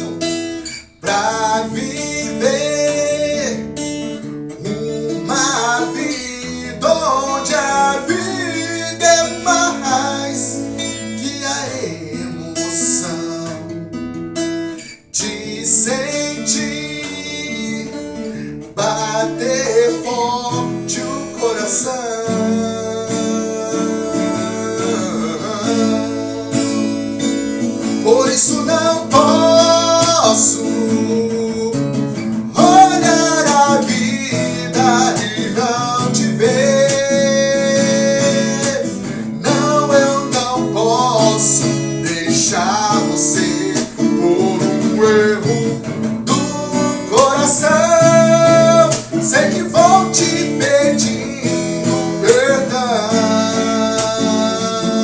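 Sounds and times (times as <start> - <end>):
person singing: 0.0 - 13.9, 14.8 - 55.0
strummed acoustic guitar: 0.0 - 55.0.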